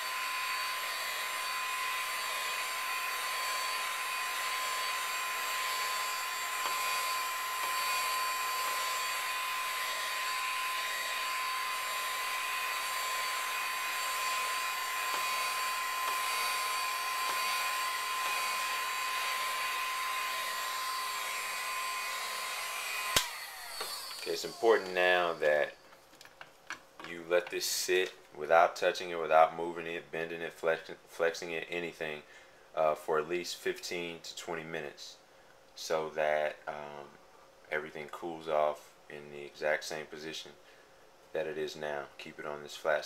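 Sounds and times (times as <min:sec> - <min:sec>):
heat gun blowing hot air: 0:00.0 - 0:25.8.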